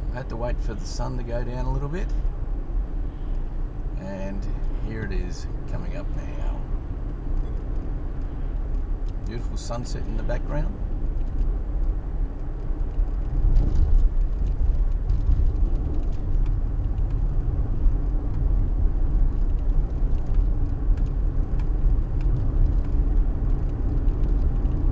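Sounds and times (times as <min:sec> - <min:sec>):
car road and engine rumble: 0:00.0 - 0:24.9
faint clicks: 0:19.2 - 0:24.9.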